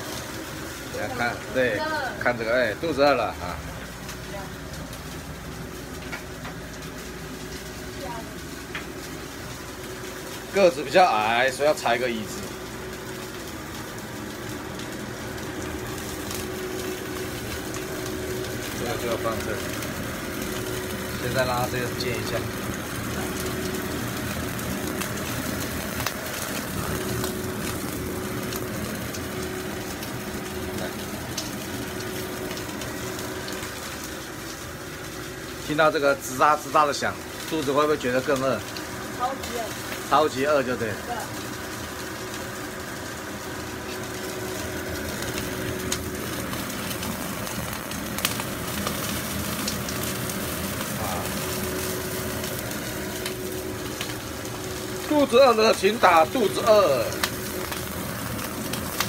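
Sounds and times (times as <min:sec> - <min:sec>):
chicken sizzling in a frying pan: 0:00.0 - 0:59.0
steady low hum: 0:00.0 - 0:59.0.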